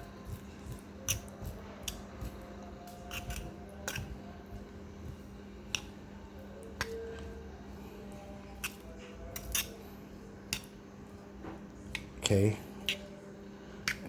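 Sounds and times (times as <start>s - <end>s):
utensil scraping a pot: 0.0s - 6.0s, 8.4s - 9.9s.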